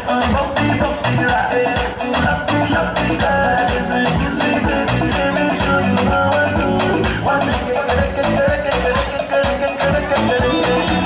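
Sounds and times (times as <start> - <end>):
upbeat dance music: 0.0 - 11.0.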